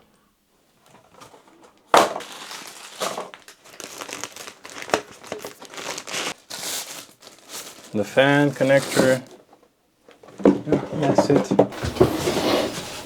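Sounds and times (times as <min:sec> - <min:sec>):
plastic packaging crinkling: 0:01.8 - 0:09.5
sharp plastic crackle: 0:01.9 - 0:09.3.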